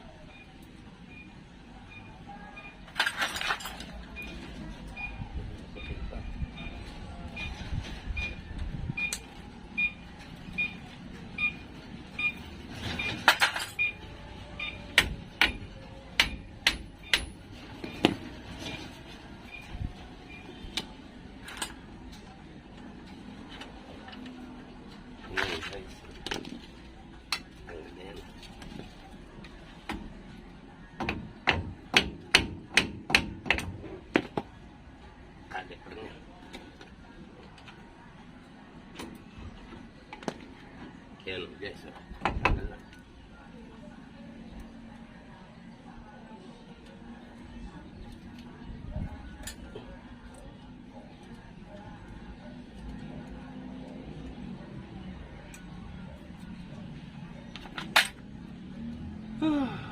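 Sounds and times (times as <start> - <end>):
metal tools clinking: 2.9 - 4.4, 12.8 - 14.0
hammer striking metal: 14.9 - 18.2.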